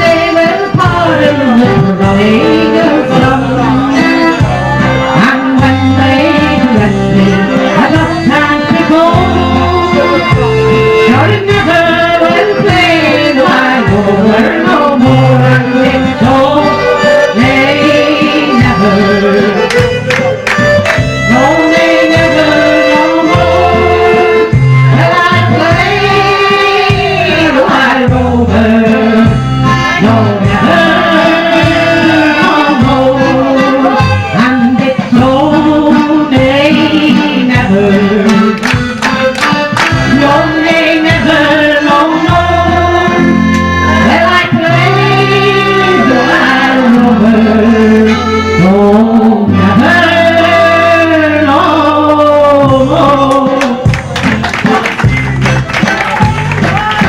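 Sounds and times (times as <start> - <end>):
electronic keyboard tune: 0.0 - 57.0.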